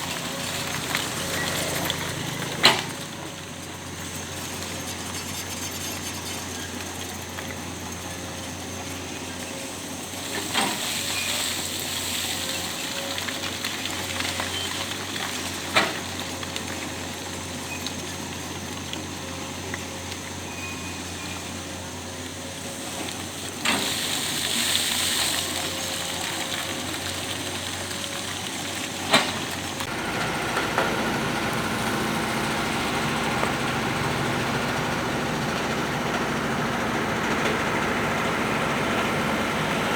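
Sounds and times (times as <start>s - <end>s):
construction machinery engine: 0.0s - 39.9s
hiss: 9.4s - 12.9s, 22.4s - 27.2s.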